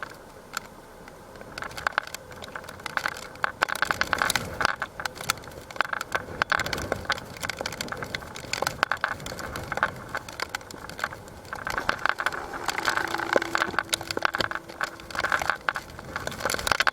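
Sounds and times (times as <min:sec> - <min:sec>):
wind and rain: 0:00.0 - 0:16.9
faint steady tone: 0:11.7 - 0:16.8.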